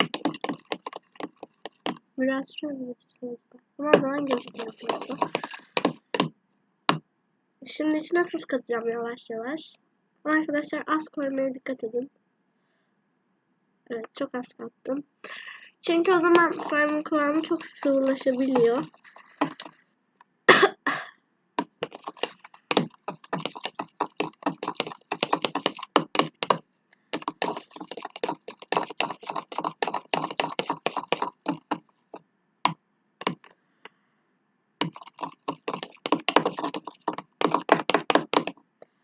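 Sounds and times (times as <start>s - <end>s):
stirring slime in a bowl: 0.0s - 2.1s, 3.9s - 6.3s, 15.8s - 19.8s, 21.6s - 33.5s, 34.8s - 38.6s.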